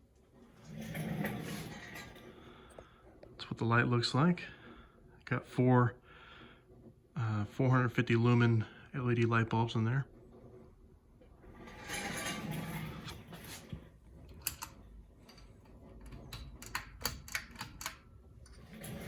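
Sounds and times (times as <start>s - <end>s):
pull-chain switch clicking and rattling: 14.3s - 18.7s.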